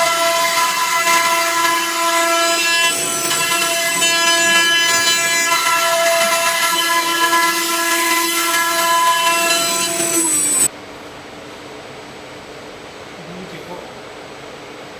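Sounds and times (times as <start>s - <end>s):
cutting noise: 0.0s - 10.7s
router spindle whining: 0.0s - 10.7s.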